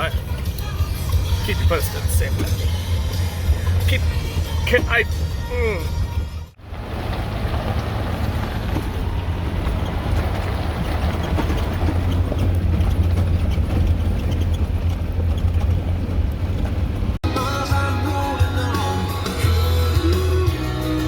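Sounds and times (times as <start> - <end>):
engine and road rumble: 0.0 - 21.0
tyre noise: 6.8 - 17.2.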